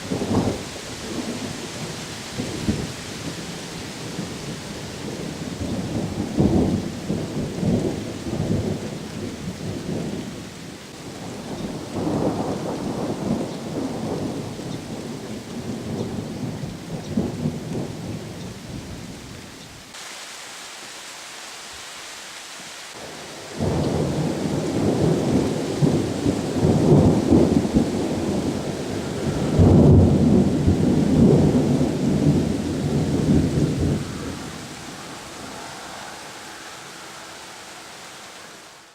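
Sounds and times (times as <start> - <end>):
distant thunder rolling: 0.0 - 18.8, 22.9 - 38.7
rain hiss: 0.0 - 38.9.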